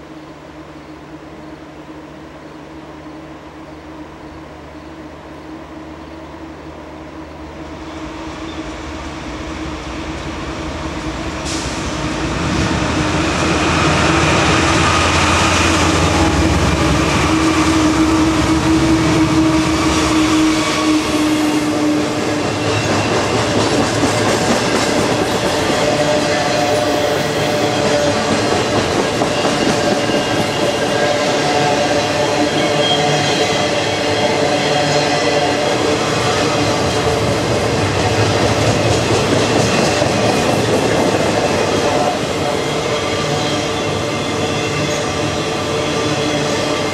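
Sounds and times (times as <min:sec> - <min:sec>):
freight train cars clattering on rails: 0:21.8 - 0:46.9.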